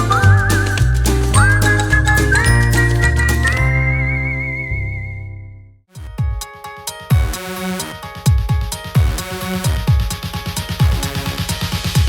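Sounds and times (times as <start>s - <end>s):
music beat: 0.0s - 4.1s, 5.9s - 12.0s
whistle-like lead melody: 0.0s - 5.7s
sustained chords and bass: 0.0s - 5.8s.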